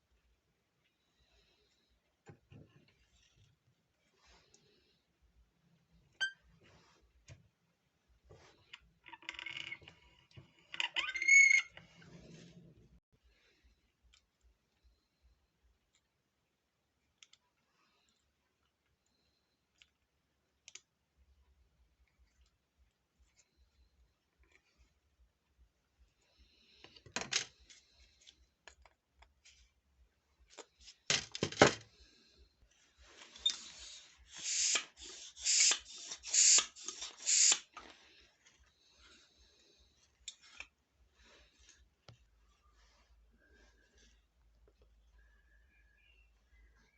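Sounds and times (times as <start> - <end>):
small clicks and scraping of parts: 8.3 - 12.2, 17.1 - 21.0, 22.0 - 25.0, 26.8 - 29.8, 33.2 - 39.1, 40.0 - 40.8.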